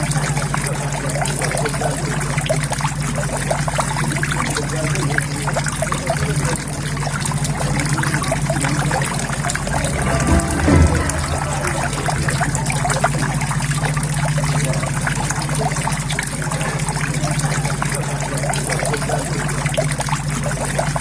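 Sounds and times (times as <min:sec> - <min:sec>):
steady low hum: 0:07.5 - 0:14.2
water trickling into pond: 0:13.6 - 0:21.0.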